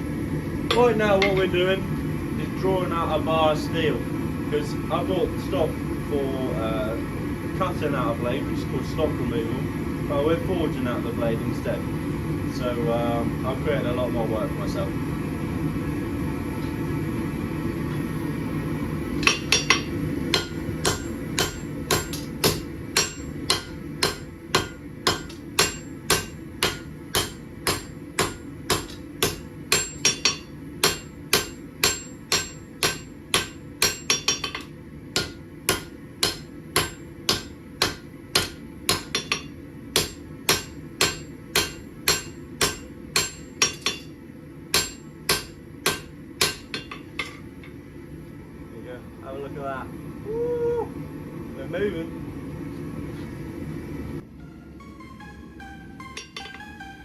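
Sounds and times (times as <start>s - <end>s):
steady low hum: 0.0s - 57.0s
hammer striking hot steel: 0.6s - 1.6s, 19.2s - 47.8s, 56.0s - 56.7s.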